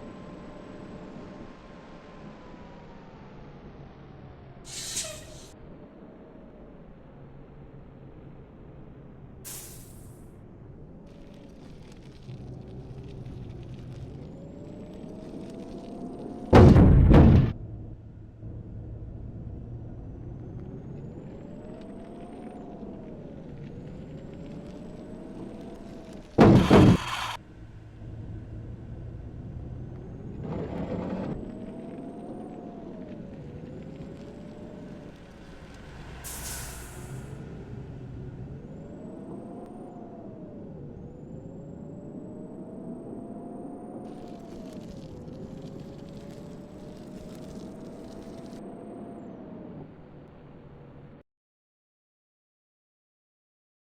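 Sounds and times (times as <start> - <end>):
short hiss: 4.7 - 5.5, 9.5 - 10.2, 26.4 - 27.4, 36.2 - 37.3
vehicle engine rumbling: 11.1 - 39.6
loud bang: 16.6 - 18.7, 26.4 - 27.4
rising and falling whine: 17.5 - 36.1.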